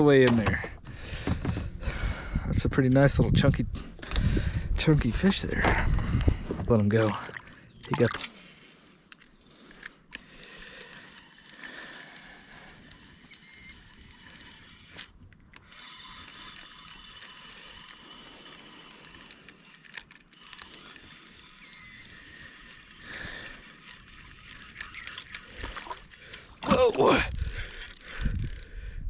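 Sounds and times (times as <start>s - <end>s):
small clicks: 7.7s - 28.7s.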